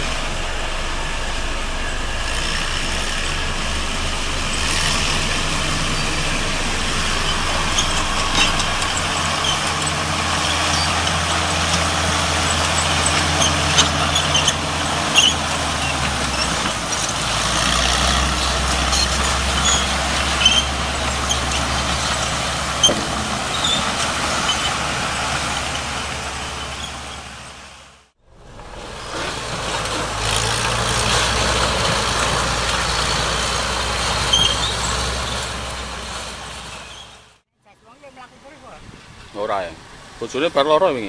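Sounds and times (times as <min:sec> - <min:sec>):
diesel machinery running: 0:00.0 - 0:41.0
metallic clinks and squeaks: 0:07.0 - 0:17.1, 0:18.4 - 0:22.2, 0:36.7 - 0:37.2.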